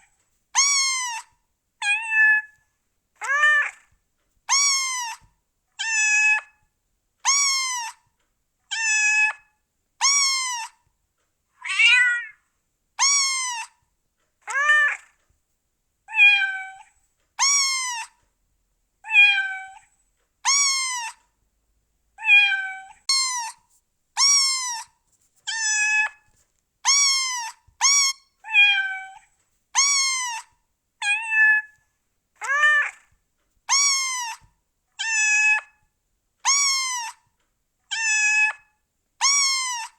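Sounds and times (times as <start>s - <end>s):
cat meowing: 0.6s - 2.6s, 3.2s - 6.6s, 7.2s - 8.1s, 8.7s - 10.9s, 11.6s - 12.4s, 13.0s - 13.8s, 14.4s - 15.2s, 16.1s - 18.2s, 19.0s - 21.3s, 22.2s - 31.8s, 32.4s - 37.3s, 37.9s - 39.9s.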